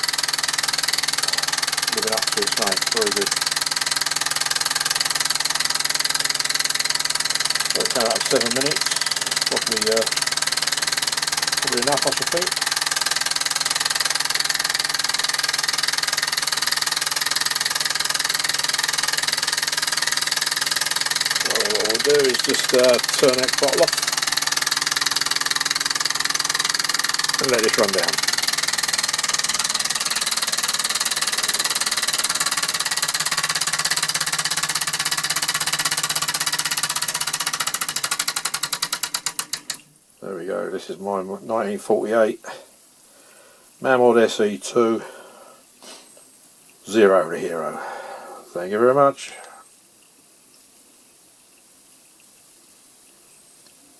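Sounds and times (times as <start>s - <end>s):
steam engine chuffing: 0.0s - 39.8s
steam hiss: 45.0s - 46.3s.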